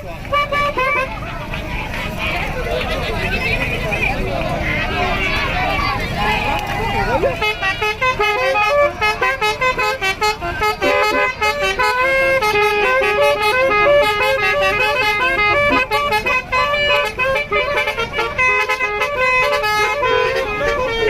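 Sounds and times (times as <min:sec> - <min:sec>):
musical bus air horns: 0:00.0 - 0:02.6, 0:06.0 - 0:21.0.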